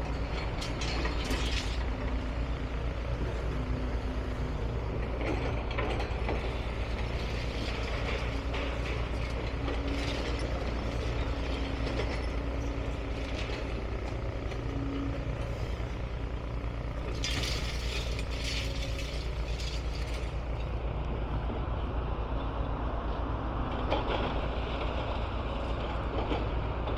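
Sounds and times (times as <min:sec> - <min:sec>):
demolition machinery engine rumble: 0:00.0 - 0:26.9
rubble clattering and scraping: 0:16.8 - 0:20.7.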